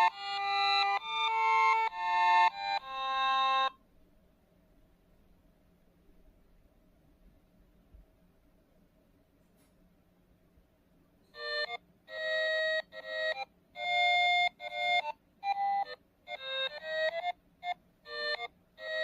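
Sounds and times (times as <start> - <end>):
electronic alarm clock melody: 0.0 - 3.8, 11.3 - 19.0.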